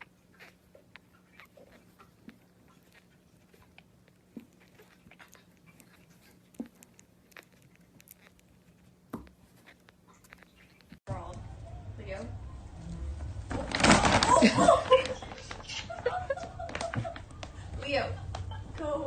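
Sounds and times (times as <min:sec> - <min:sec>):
dog making quiet small sounds: 0:00.0 - 0:11.0.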